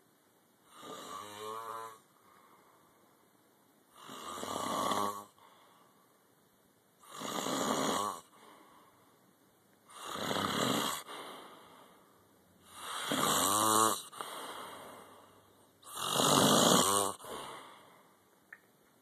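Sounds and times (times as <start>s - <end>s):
quiet breath: 0.6s - 4.6s, 5.2s - 6.4s, 8.2s - 10.1s, 11.0s - 13.2s, 14.0s - 16.0s, 17.2s - 18.5s
man snoring: 0.7s - 2.1s, 3.9s - 5.4s, 7.0s - 8.5s, 9.9s - 11.8s, 12.6s - 17.8s.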